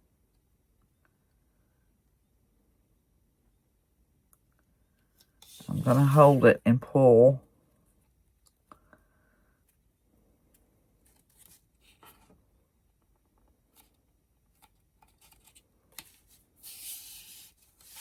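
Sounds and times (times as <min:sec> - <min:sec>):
scratchy rub: 0:05.4 - 0:06.6, 0:16.6 - 0:18.0.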